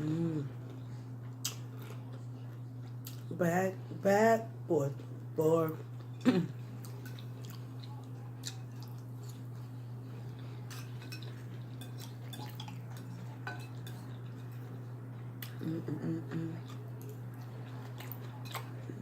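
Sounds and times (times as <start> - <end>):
low electrical hum: 0.0 - 19.0
cutlery clinking against plate: 10.7 - 14.7.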